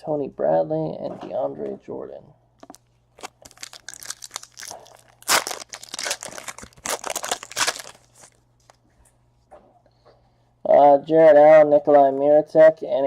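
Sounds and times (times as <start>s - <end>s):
foil wrapper tearing and crinkling: 2.6s - 8.4s.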